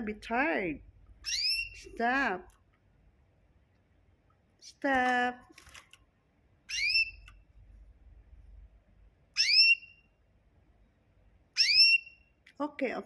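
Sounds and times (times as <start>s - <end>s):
small bird whistled call: 1.2s - 1.8s, 6.7s - 7.3s, 9.4s - 10.1s, 11.6s - 12.3s.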